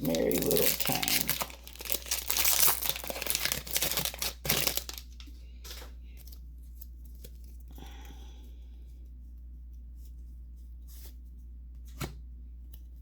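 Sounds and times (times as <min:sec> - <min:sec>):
foil wrapper tearing and crinkling: 0:00.0 - 0:05.3.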